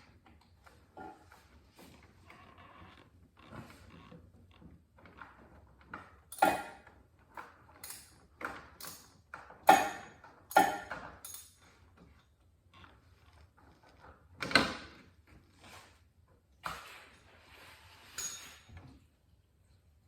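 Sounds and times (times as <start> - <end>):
wrench clanking on metal: 9.7 - 11.6.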